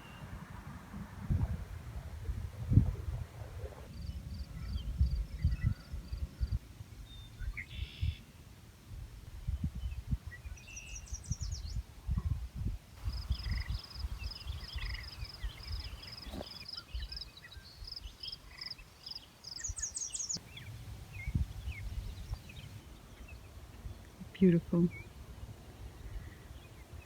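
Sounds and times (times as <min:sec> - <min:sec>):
low rumble: 0:00.3 - 0:06.6
wild birds singing: 0:02.7 - 0:08.3, 0:09.9 - 0:11.8, 0:13.0 - 0:27.0.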